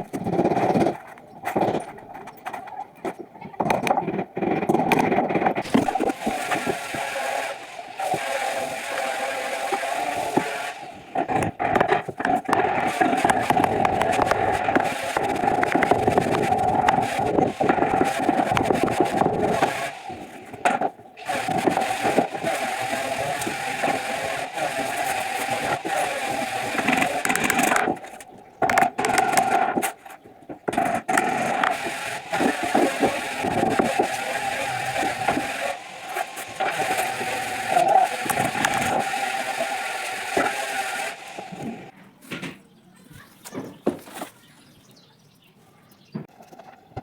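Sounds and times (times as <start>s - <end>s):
small power tool motor running: 5.6s - 29.8s, 30.8s - 41.9s.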